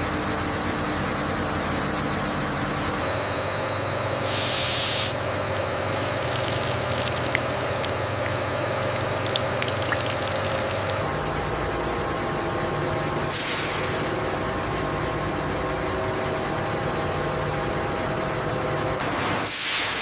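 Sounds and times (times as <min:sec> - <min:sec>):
industrial machinery humming: 0:01.5 - 0:18.9
hiss of released air: 0:04.2 - 0:05.4, 0:13.3 - 0:13.8, 0:19.4 - 0:20.0.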